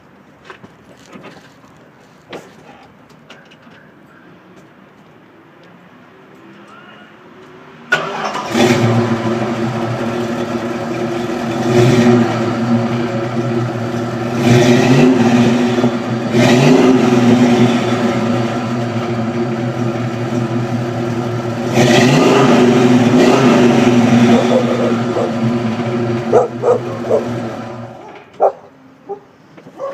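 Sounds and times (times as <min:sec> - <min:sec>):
car engine idling and revving: 0:07.7 - 0:28.6.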